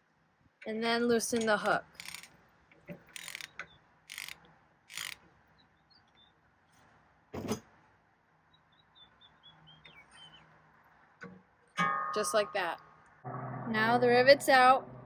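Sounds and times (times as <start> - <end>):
sharp metal clank: 11.8 - 15.0.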